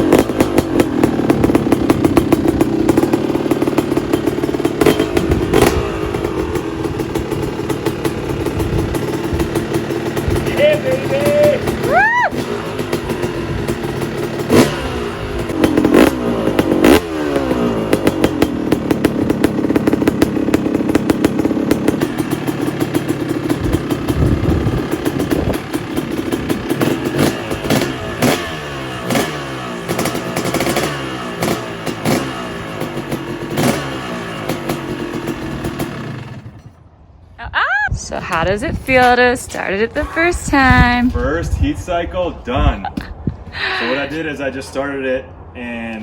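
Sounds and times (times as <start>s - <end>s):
two-stroke motorcycle engine revving: 0.0s - 36.8s.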